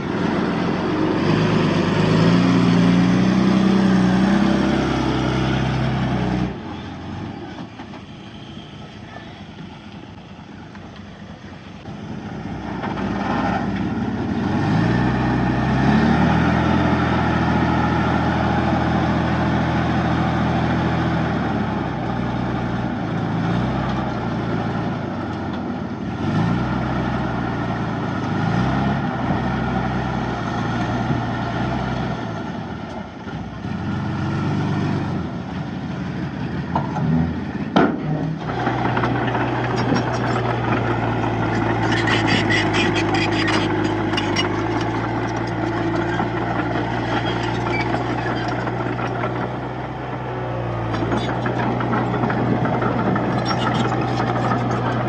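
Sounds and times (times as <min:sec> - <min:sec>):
heavy diesel engine revving: 0:00.0 - 0:06.7, 0:12.4 - 0:25.0, 0:37.0 - 0:55.0.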